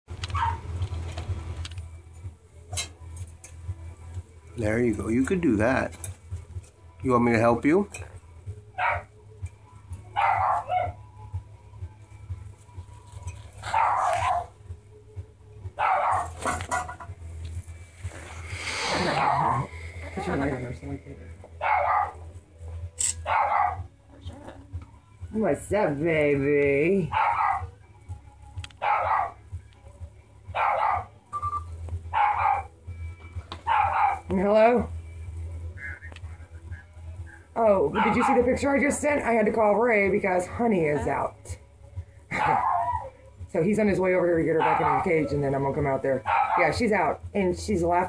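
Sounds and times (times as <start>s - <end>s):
dog barking harshly: 10.2s - 11.0s, 13.7s - 14.5s, 15.8s - 16.4s, 21.6s - 22.2s, 23.2s - 23.9s, 27.1s - 27.7s, 28.8s - 29.4s, 30.6s - 31.1s, 32.2s - 32.7s, 33.7s - 34.3s, 38.0s - 38.5s, 42.4s - 43.0s, 44.6s - 45.1s, 46.2s - 46.7s.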